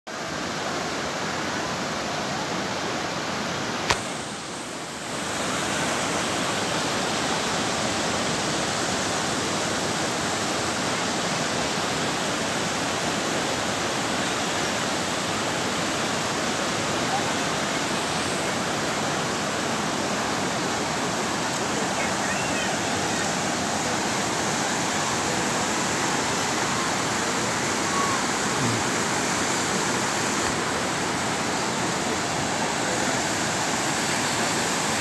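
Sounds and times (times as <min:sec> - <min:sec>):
waterfall rushing: 0:00.1 - 0:35.0
sharp click: 0:03.9 - 0:04.3.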